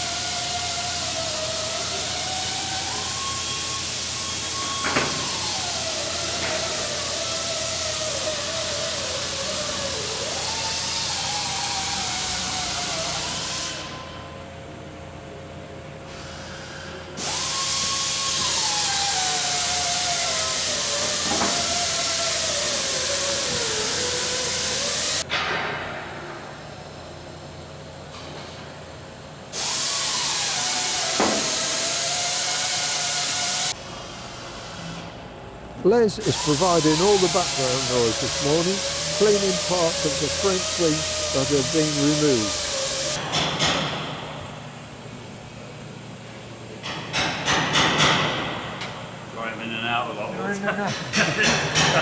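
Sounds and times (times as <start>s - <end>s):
air tool hissing with whine: 36.2s - 43.2s.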